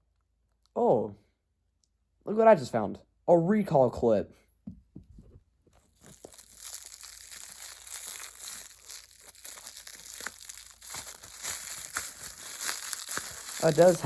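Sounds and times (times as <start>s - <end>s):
plastic wrap crinkling: 5.8s - 14.0s.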